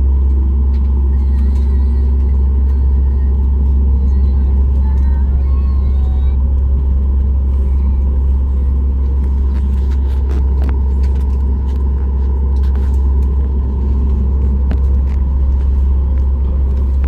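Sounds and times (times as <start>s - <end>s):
airliner cabin rumble: 0.0s - 17.0s.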